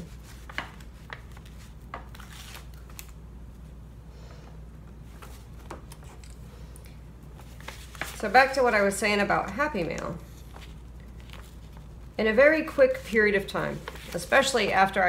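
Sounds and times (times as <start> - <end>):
paper crackling and tapping: 0.0 - 3.2, 7.4 - 15.0
low steady hum: 0.0 - 15.0.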